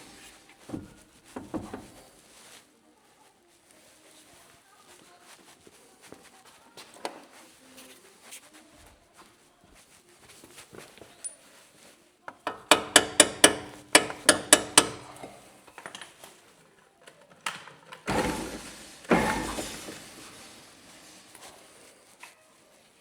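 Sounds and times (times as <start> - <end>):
metal rattling crashes: 18.1 - 21.9.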